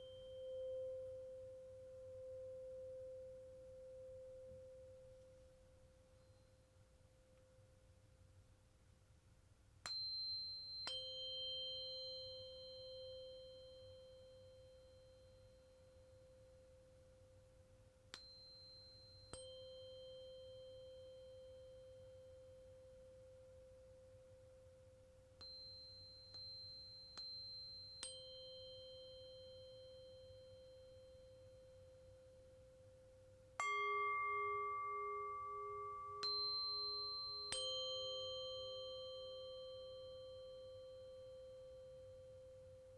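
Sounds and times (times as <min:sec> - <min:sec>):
singing bowl ringing: 0:00.0 - 0:05.2, 0:09.9 - 0:16.6, 0:18.2 - 0:22.6, 0:25.4 - 0:32.2, 0:33.6 - 0:42.7
tuning forks ringing: 0:09.9 - 0:16.1, 0:18.2 - 0:22.3, 0:25.4 - 0:31.9, 0:33.6 - 0:42.3.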